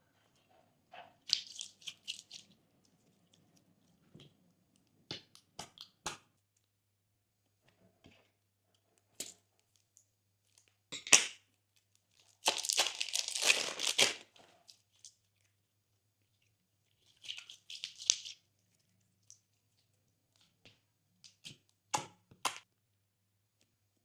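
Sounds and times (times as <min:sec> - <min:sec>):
slime squished by hand: 0:12.4 - 0:14.3.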